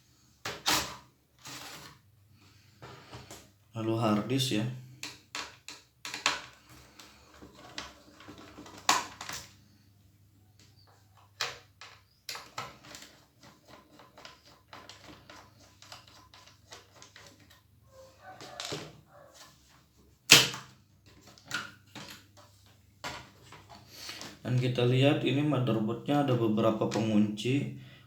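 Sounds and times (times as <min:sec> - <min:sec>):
laptop parts clicking and knocking: 0:05.0 - 0:09.5, 0:20.3 - 0:23.8.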